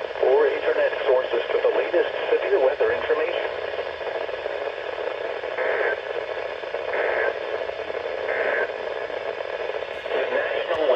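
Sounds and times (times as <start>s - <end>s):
radio static hiss: 0.0s - 10.9s.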